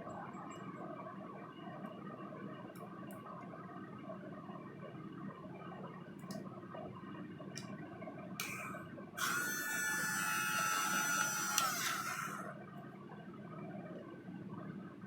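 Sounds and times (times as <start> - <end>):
electric drill whining: 8.4 - 12.5.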